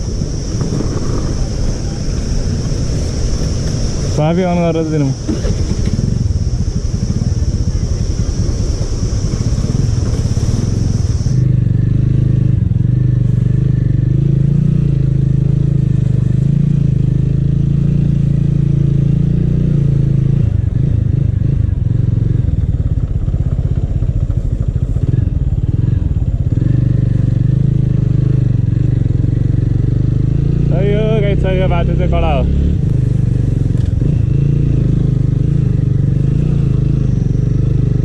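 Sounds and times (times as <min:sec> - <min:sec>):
high hiss: 0:00.0 - 0:11.5
small motorbike engine running: 0:00.0 - 0:38.0.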